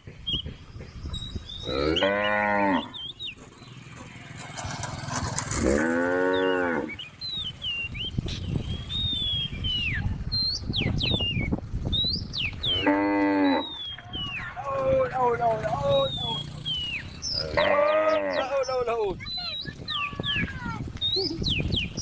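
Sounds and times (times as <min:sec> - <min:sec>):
cow mooing: 0:01.6 - 0:03.0, 0:05.5 - 0:07.0, 0:12.7 - 0:13.8, 0:17.4 - 0:18.5.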